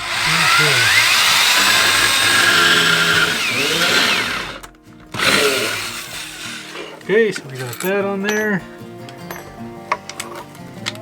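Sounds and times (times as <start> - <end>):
power drill drilling into wood: 0.0 - 7.0.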